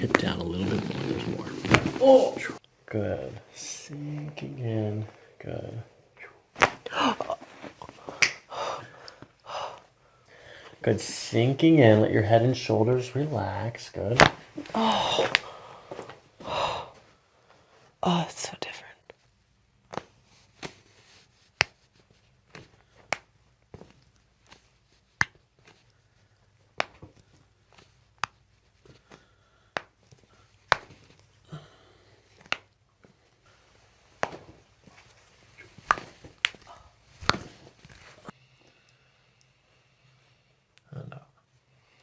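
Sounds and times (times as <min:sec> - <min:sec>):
spine joints cracking: 0:00.0 - 0:02.6, 0:32.3 - 0:33.2, 0:34.1 - 0:38.3.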